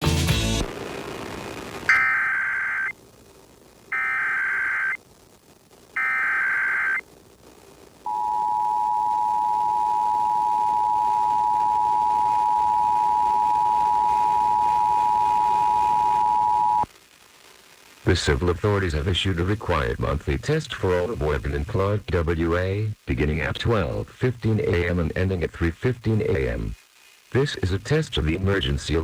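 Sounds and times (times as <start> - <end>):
warbling digital data tone: 1.9 - 2.9, 6.0 - 7.0
steady two-tone attention signal: 8.1 - 16.8.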